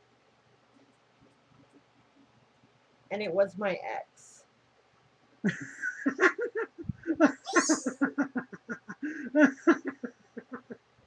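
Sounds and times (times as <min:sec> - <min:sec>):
person laughing: 0:05.5 - 0:10.8.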